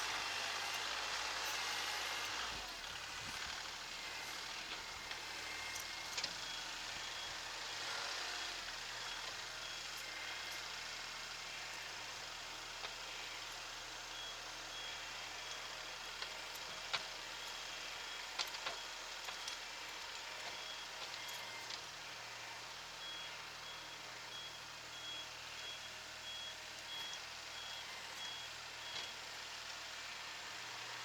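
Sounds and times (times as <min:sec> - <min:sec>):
reversing buzzer beeping: 0:23.0 - 0:29.1.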